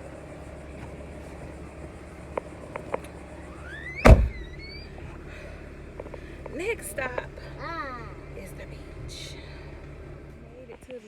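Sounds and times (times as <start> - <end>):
truck engine humming: 0.0 - 11.0
short high squeaks: 3.6 - 5.0
loud thump: 3.9 - 5.1.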